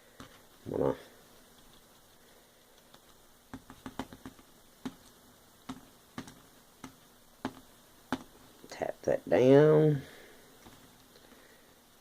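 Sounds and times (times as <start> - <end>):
light tapping by hand: 2.7 - 8.4.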